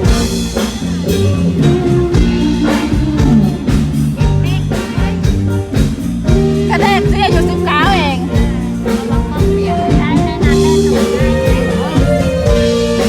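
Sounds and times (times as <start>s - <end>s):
drum kit: 0.0s - 13.0s
electric guitar: 0.0s - 13.0s
held bass notes: 0.0s - 13.0s.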